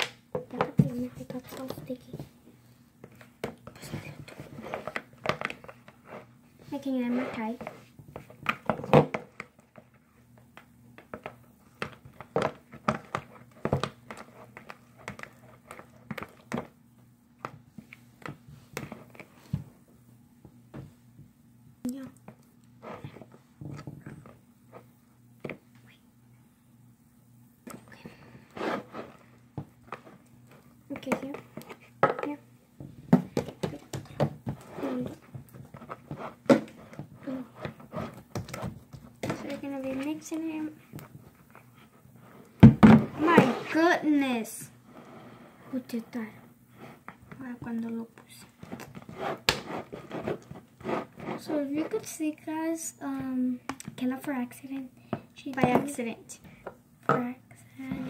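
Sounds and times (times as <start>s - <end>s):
spatula scraping slime in bowl: 5.9s - 7.9s, 48.6s - 52.2s.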